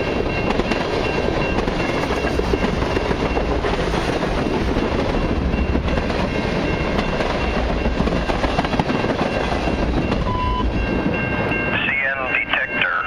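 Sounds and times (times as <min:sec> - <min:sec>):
train wheels clicking over rails: 0:00.0 - 0:10.3.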